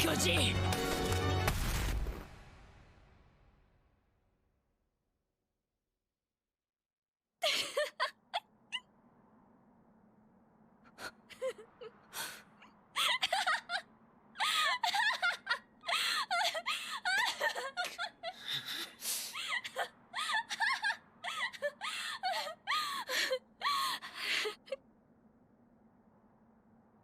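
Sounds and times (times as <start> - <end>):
woman laughing hysterically: 7.4 - 8.3, 13.0 - 18.8, 19.4 - 24.8.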